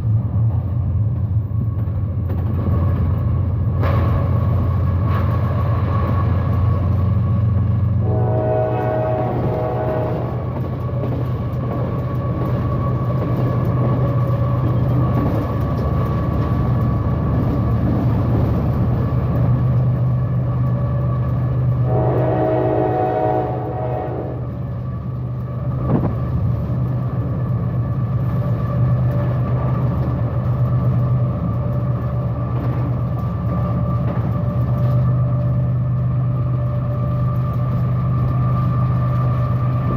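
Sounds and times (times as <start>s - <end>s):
locomotive engine drone: 0.0s - 39.9s
locomotive horn: 8.0s - 10.5s, 21.8s - 24.6s.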